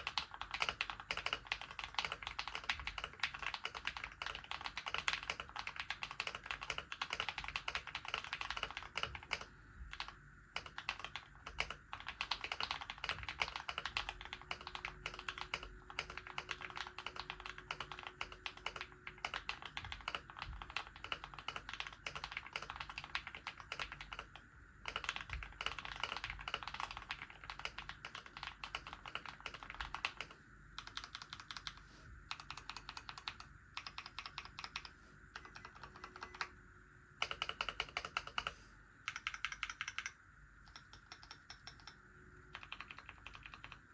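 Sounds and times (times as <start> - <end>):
fast typing on mechanical keyboard: 0.0 - 36.5, 37.2 - 41.9, 42.5 - 43.9.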